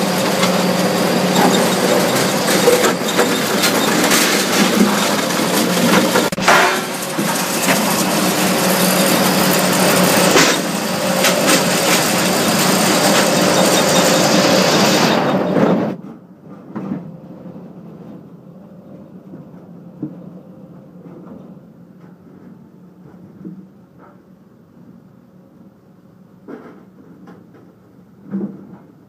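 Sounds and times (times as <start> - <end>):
debarker machine stripping bark: 0.0 - 16.0.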